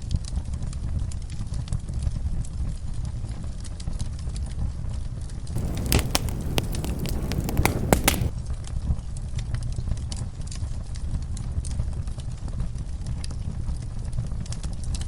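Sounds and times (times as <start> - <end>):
wood fire crackling and popping: 5.6 - 8.3.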